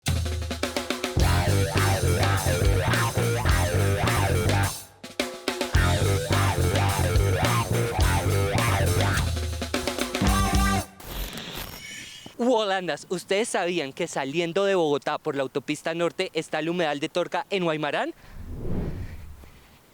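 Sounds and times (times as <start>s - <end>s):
upbeat guitar band music: 1.2s - 4.8s, 5.7s - 10.9s.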